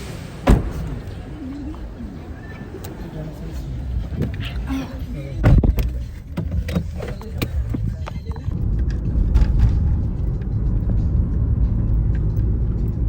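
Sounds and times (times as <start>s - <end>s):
faint voices: 0.0s - 8.6s
car road rumble from inside: 0.0s - 13.0s.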